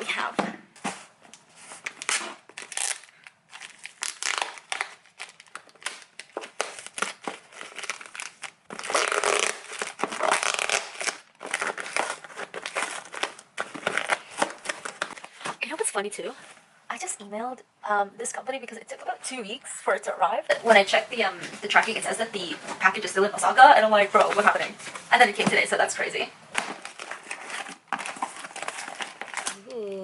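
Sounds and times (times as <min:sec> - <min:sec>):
paper and plastic packaging tearing: 0:01.8 - 0:15.3, 0:26.6 - 0:29.7.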